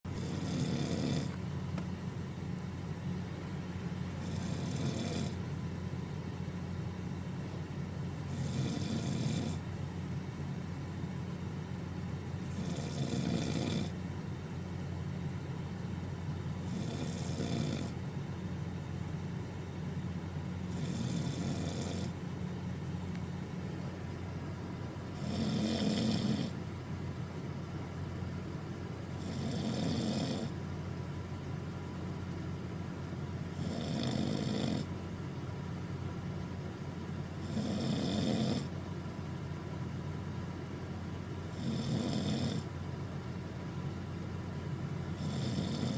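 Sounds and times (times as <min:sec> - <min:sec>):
steady low hum: 0:00.0 - 0:45.9
person snoring: 0:00.2 - 0:01.4, 0:12.5 - 0:14.0, 0:16.6 - 0:18.0, 0:25.2 - 0:26.6, 0:45.2 - 0:45.9.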